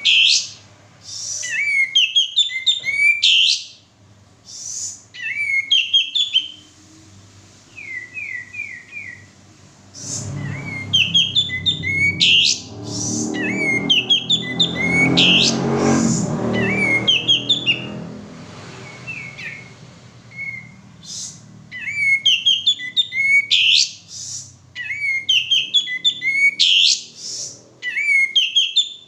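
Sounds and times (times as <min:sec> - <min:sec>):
bird chirping and whistling: 0:00.0 - 0:03.8, 0:04.5 - 0:06.7, 0:07.7 - 0:09.4, 0:10.0 - 0:18.0, 0:18.8 - 0:29.0
low rumble: 0:09.8 - 0:18.4.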